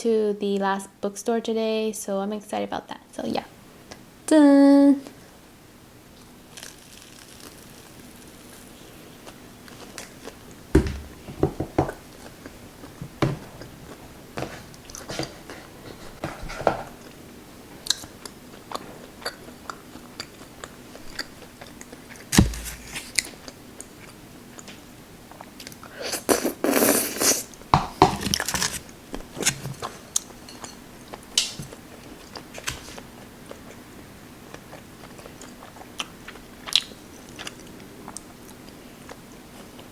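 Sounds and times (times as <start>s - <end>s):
food crunching: 6.5s - 10.5s, 34.5s - 39.9s
chewing and biting food: 34.5s - 39.9s.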